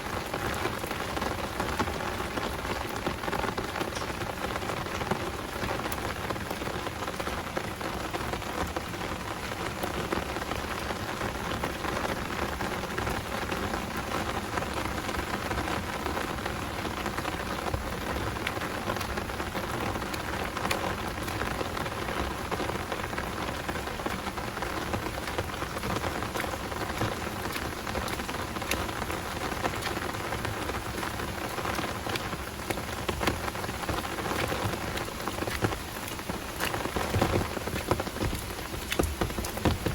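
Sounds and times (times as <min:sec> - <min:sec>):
heavy rain pouring: 0:00.0 - 0:39.9
sharp raindrop hits: 0:12.4 - 0:39.9.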